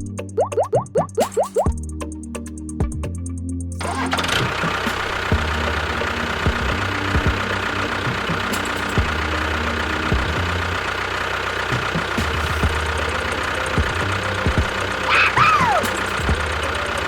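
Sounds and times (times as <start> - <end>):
engine running with low hum: 1.7 - 17.0
engine knocks: 3.8 - 17.0
falling squeal: 13.2 - 17.0.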